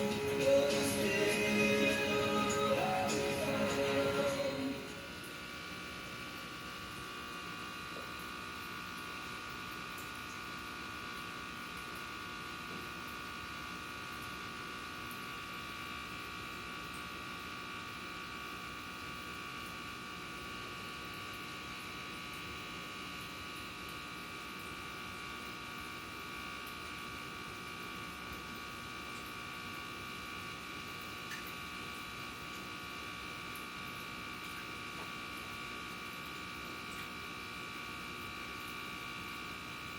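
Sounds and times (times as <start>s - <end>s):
buzzing hum: 0.0s - 10.1s.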